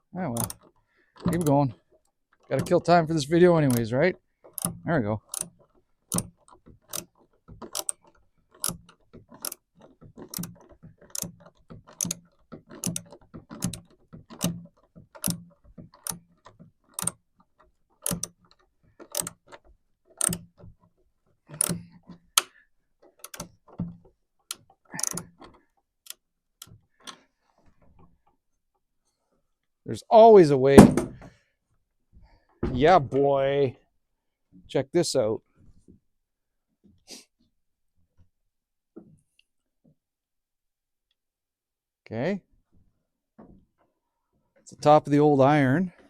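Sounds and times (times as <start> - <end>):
metallic clicks of hand tools: 0.3 - 1.6, 3.6 - 17.2, 18.0 - 20.6, 21.5 - 23.6, 24.5 - 27.2.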